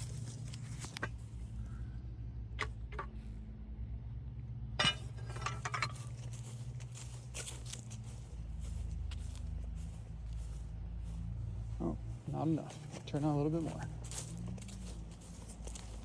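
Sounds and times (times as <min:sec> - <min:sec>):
steady low hum: 0:00.0 - 0:16.0
sharp metallic clinks and knocks: 0:04.8 - 0:08.2.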